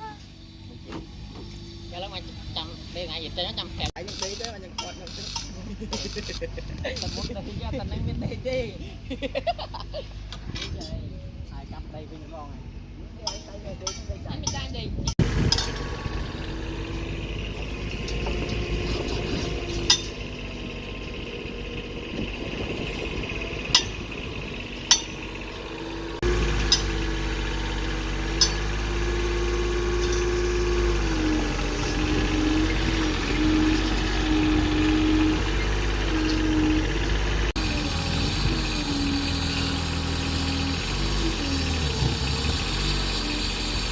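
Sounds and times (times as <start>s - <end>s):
engine running: 0.0s - 43.9s
sharp metallic clinks: 15.4s - 37.2s.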